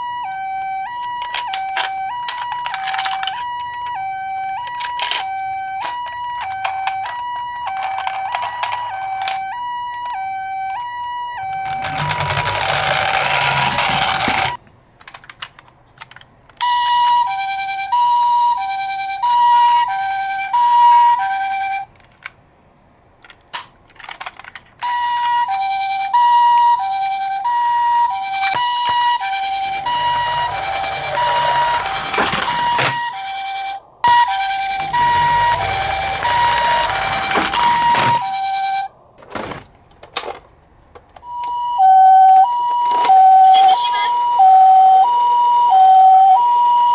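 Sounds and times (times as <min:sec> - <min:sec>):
toy electronic two-tone siren: 0:00.0 - 0:14.6, 0:16.6 - 0:21.9, 0:24.8 - 0:38.9, 0:41.2 - 0:46.9
clicks: 0:00.2 - 0:10.9.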